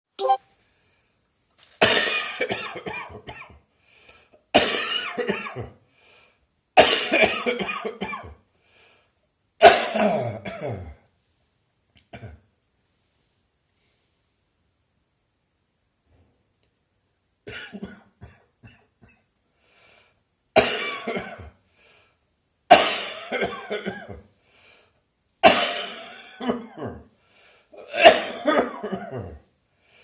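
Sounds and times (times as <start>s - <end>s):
person coughing: 9.6s - 11.0s, 20.6s - 21.5s, 22.7s - 24.2s, 25.4s - 27.1s, 27.8s - 29.4s.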